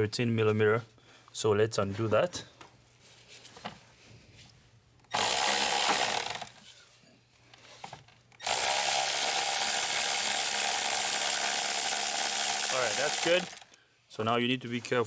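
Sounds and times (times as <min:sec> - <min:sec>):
power tool spinning out bolt: 0:05.1 - 0:06.6, 0:08.4 - 0:13.8.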